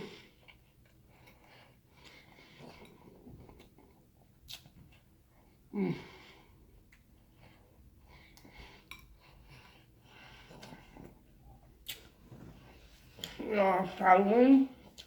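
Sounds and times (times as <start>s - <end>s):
chewing: 0.4s - 5.5s, 8.2s - 12.2s.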